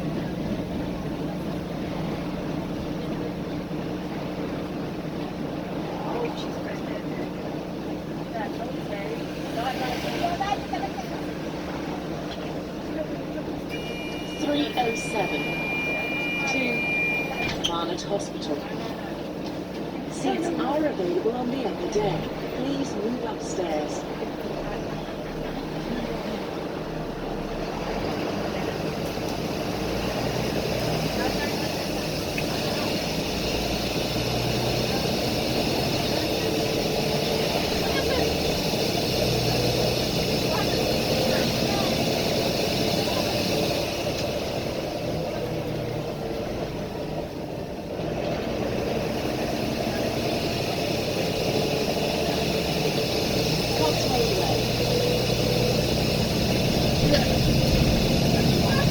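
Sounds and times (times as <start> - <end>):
bus diesel engine running: 0.0 - 58.9
loud steady hiss: 29.2 - 58.9.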